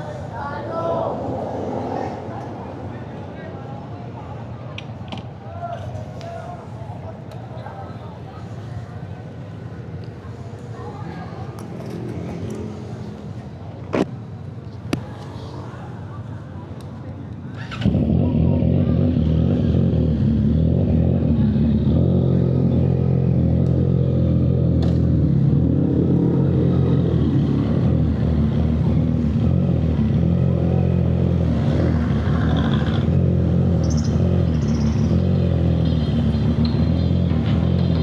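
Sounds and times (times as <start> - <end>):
motorcycle engine running: 17.8 - 38.0.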